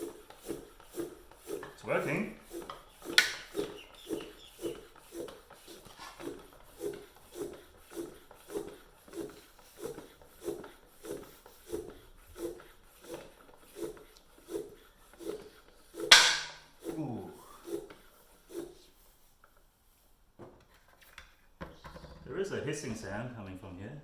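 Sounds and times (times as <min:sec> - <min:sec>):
bicycle floor pump strokes: 0:00.0 - 0:20.2.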